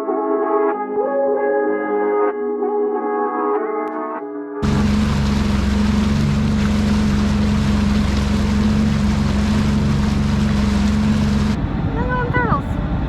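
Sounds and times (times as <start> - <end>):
background music: 0.0 - 4.6
watercraft engine running: 4.6 - 12.8
rushing water and wind: 4.6 - 13.0.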